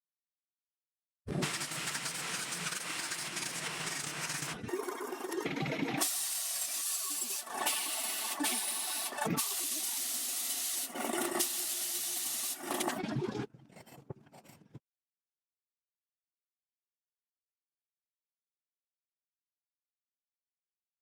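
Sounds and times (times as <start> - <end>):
metalworking tool hissing: 6.0 - 12.7.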